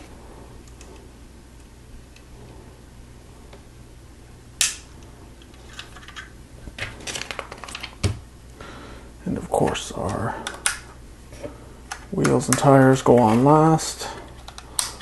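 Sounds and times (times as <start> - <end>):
plastic pieces snapping together: 14.4 - 15.0.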